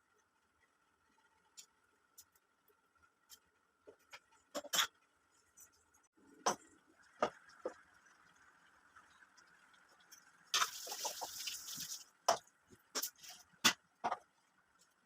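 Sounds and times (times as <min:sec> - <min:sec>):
liquid pouring: 0:10.6 - 0:12.2.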